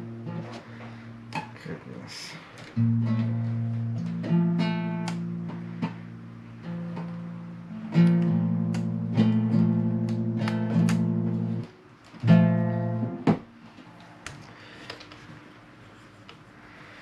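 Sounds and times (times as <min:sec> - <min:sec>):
acoustic guitar strummed chords: 0:02.8 - 0:11.6, 0:12.2 - 0:13.5.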